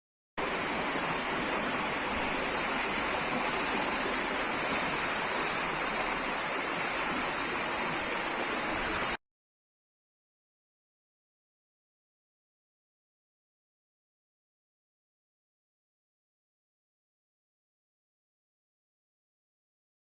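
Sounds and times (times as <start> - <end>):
storm water rushing: 0.4 - 9.2.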